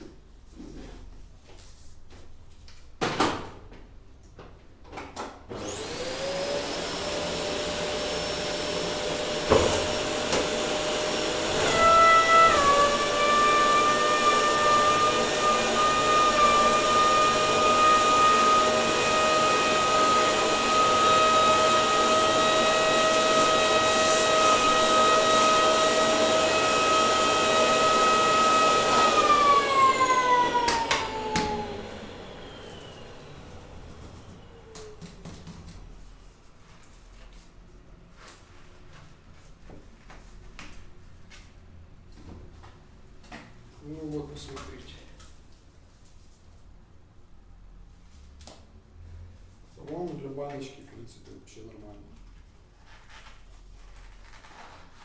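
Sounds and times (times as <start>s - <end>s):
vacuum cleaner motor whining: 5.5s - 35.2s.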